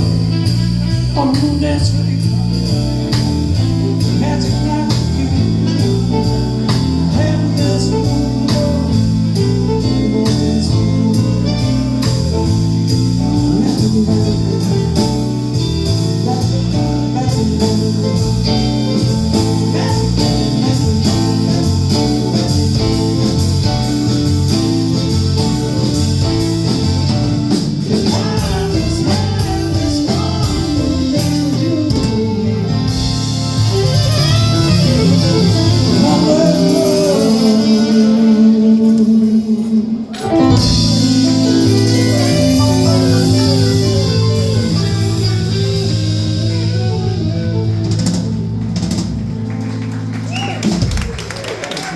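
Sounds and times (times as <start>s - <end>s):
steady drum beat: 0.0s - 38.8s, 40.2s - 51.9s
bass line: 0.0s - 51.9s
guitar: 0.0s - 51.9s.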